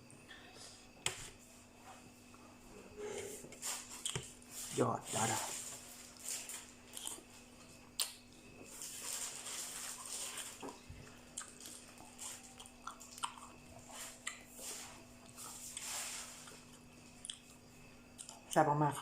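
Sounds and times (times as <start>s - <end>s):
person chewing wetly: 6.9s - 7.3s, 10.4s - 14.6s, 16.5s - 18.6s.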